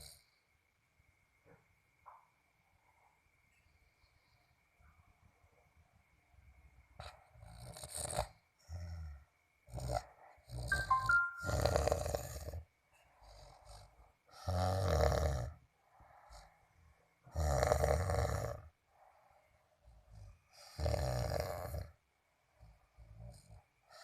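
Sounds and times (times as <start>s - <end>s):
loud rattling snores: 0.0s - 0.2s, 7.0s - 10.8s, 11.5s - 15.6s, 17.3s - 18.7s, 20.0s - 22.0s
high whistling tones: 10.7s - 11.8s
soft breathing: 15.7s - 17.2s, 18.8s - 20.8s.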